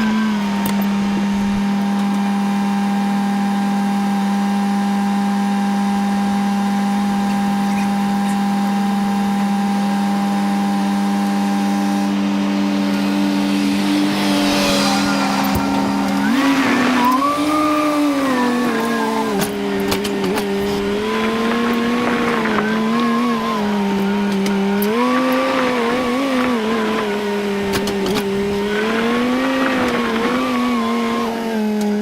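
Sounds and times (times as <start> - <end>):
vehicle engine running: 0.0 - 32.0
higher tone: 11.4 - 31.2.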